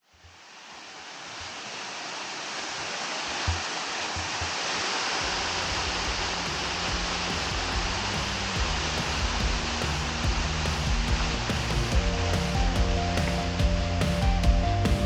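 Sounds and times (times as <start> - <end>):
flowing water rushing: 0.6 - 11.8
low music bass: 5.2 - 15.0.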